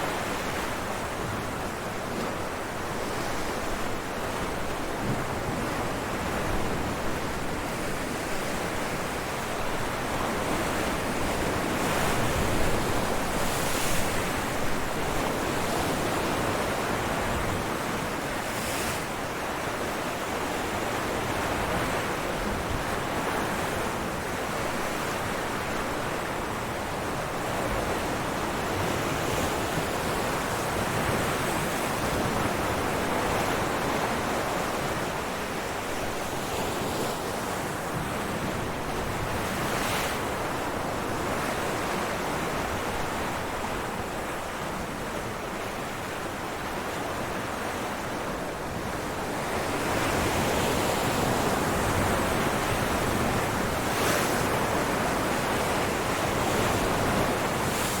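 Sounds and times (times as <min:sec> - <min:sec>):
ocean waves breaking on rocks: 0:45.4 - 0:58.0.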